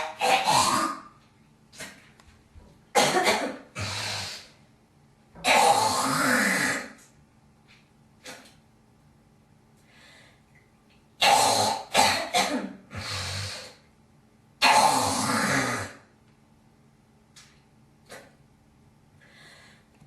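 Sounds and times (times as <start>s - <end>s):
woman coughing: 3.0s - 3.8s, 11.3s - 12.8s
woman clearing throat: 3.0s - 4.0s, 11.2s - 12.8s.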